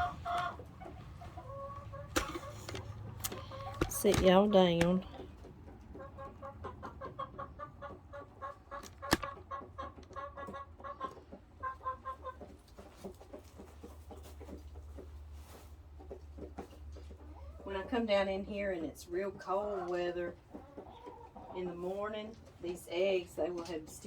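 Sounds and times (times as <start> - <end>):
hens clucking: 0.0 - 24.0
sharp click: 8.8 - 9.3.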